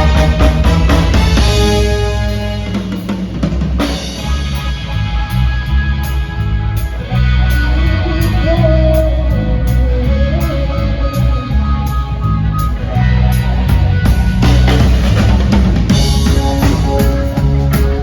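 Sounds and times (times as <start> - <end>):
bending lead guitar: 0.0 - 18.0
rock band playing: 0.0 - 18.0.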